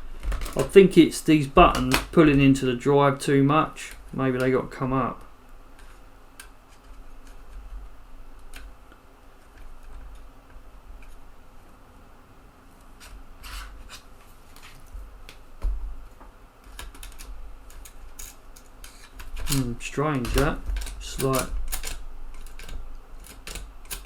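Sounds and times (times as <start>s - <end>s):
floppy drive mechanism clicks: 1.5s - 2.4s, 16.7s - 24.0s.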